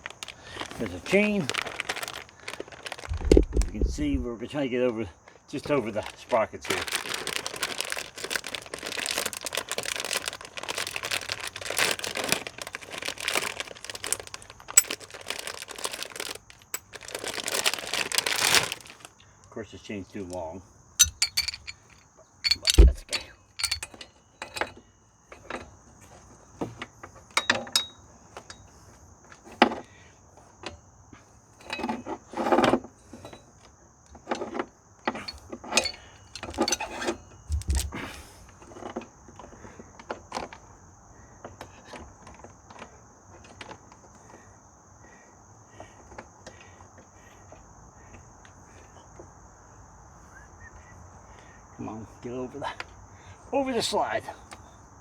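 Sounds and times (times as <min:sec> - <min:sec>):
insects chirring: 0:00.0 - 0:55.0
metal drive chain clanking: 0:21.0 - 0:24.0, 0:35.3 - 0:37.1.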